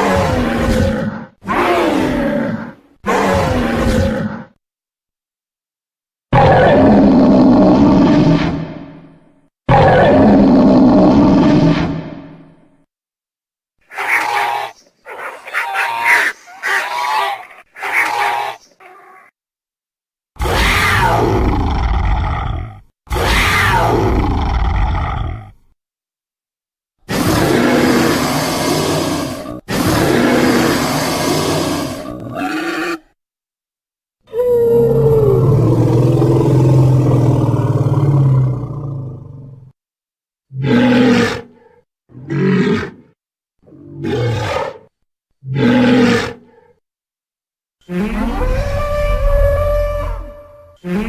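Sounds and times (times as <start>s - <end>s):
dinosaur roar: 0.0s - 4.6s, 6.3s - 12.7s, 20.4s - 25.7s, 27.1s - 33.2s, 34.3s - 39.8s, 40.5s - 46.8s, 47.8s - 51.0s.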